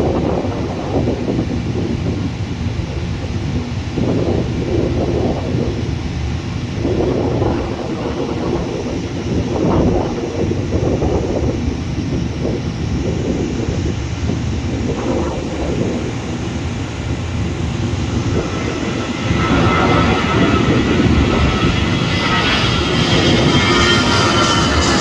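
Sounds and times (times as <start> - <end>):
jet engines rumbling: 0.0 - 25.0.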